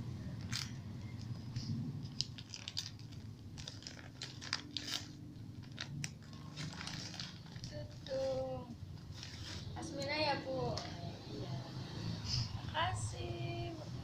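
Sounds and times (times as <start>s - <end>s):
gift packaging crinkling: 0.4s - 9.8s.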